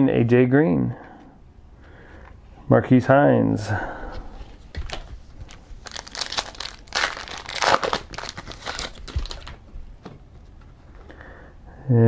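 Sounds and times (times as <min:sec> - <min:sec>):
card pack wrapper crinkling: 0:04.8 - 0:09.6.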